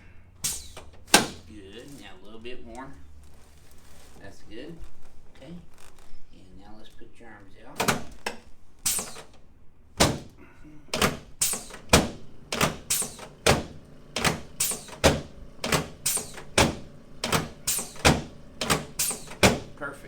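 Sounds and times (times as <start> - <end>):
sharp knocks: 11.0 - 19.7.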